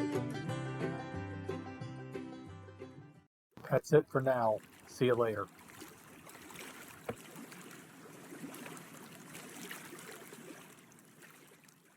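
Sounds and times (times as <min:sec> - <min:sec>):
water lapping and trickling: 0:03.6 - 0:11.9.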